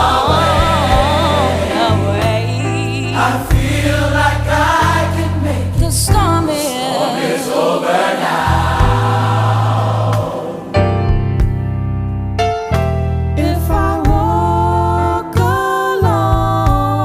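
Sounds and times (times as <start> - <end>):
deep held bass: 0.0 - 6.5, 8.5 - 17.0
choir singing: 0.0 - 11.2.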